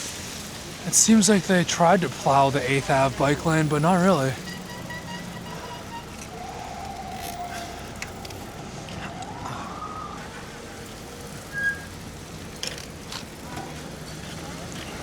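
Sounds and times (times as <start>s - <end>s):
city traffic noise: 0.0s - 15.0s
emergency siren wailing: 0.8s - 12.0s.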